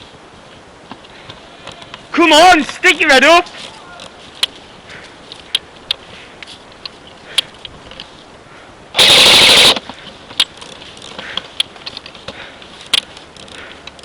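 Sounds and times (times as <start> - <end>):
airsoft gun full-auto burst: 9.0 - 9.8
sharp clicks: 9.0 - 12.1.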